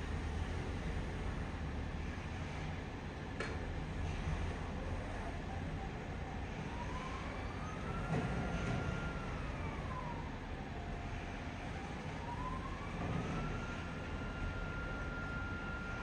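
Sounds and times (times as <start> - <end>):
siren wailing: 12.2 - 16.0.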